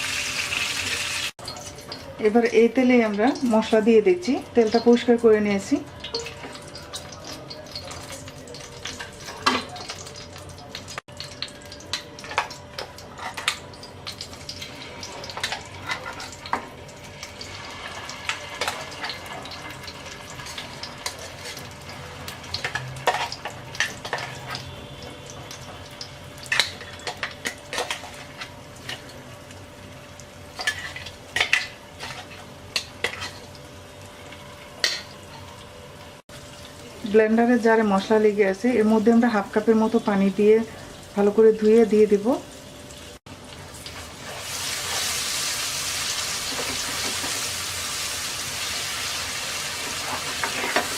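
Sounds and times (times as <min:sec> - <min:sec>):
spice paste sizzling in oil: 0:00.0 - 0:08.4, 0:36.3 - 0:50.9.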